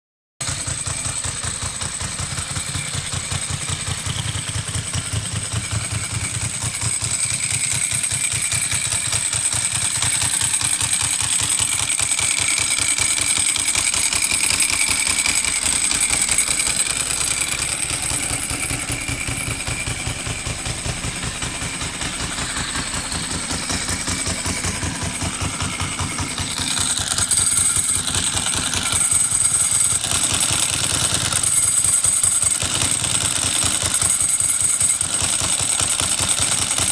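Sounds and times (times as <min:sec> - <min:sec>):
motorcycle engine idling: 0:00.4 - 0:36.9.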